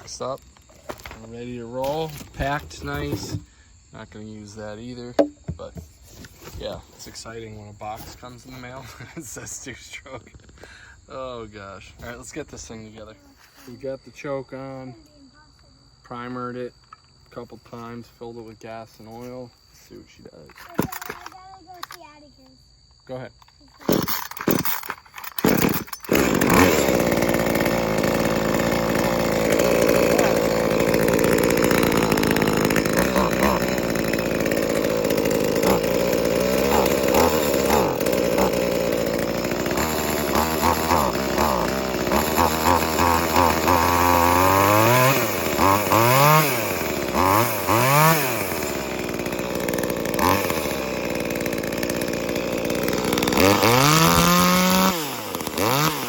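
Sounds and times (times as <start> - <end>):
chainsaw running and revving: 0.9 - 3.5, 23.9 - 56.0
starter cord pull: 20.6 - 22.0, 23.4 - 46.0.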